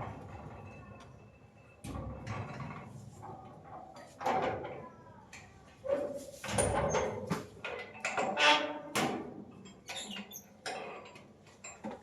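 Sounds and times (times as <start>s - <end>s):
squeaking gate hinges: 9.8s - 10.6s.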